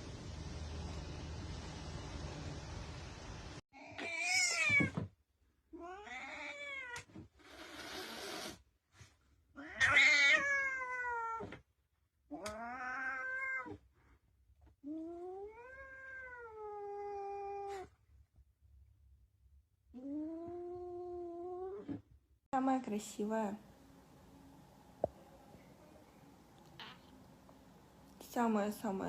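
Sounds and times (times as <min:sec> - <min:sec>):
cat meowing: 0:05.8 - 0:07.1, 0:09.6 - 0:11.5, 0:12.3 - 0:13.8, 0:15.2 - 0:17.9.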